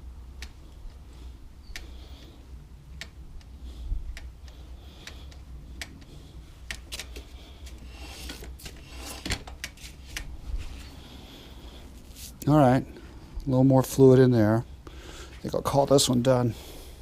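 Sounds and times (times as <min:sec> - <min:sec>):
low steady hum: 0:00.0 - 0:17.0
short rustle: 0:11.8 - 0:12.5.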